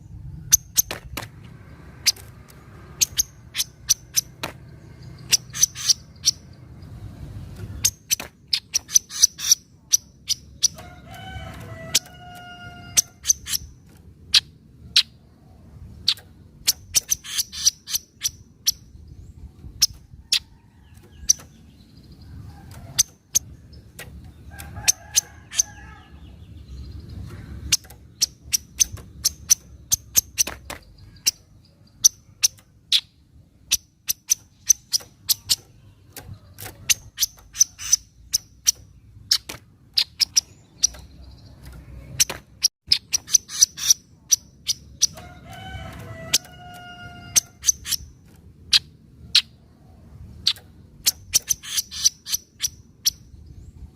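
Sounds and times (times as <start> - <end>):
bird chattering call: 3.0 - 4.4, 5.1 - 6.5, 7.8 - 15.2, 16.0 - 18.9, 27.2 - 42.3, 42.9 - 49.6, 50.4 - 53.2.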